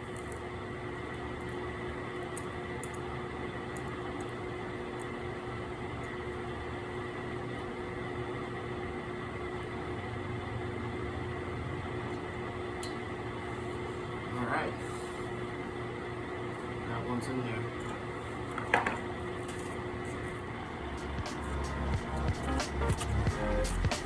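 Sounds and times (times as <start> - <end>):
machine hum with whine: 0.0 - 24.0
noisy hiss: 20.8 - 24.0.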